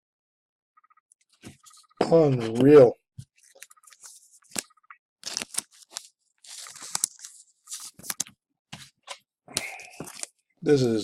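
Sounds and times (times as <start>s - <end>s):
cards rustling and sliding: 3.4s - 10.4s.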